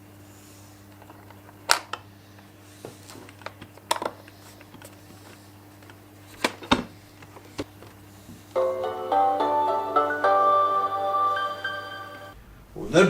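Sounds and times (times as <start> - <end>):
low electrical hum: 0.0 - 13.0
clicks and knocks of handling: 2.8 - 8.0.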